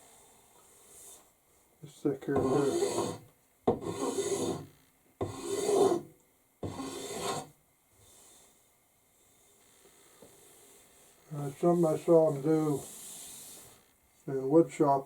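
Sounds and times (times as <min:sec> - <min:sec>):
hand scraper scraping wood: 0:02.3 - 0:07.5.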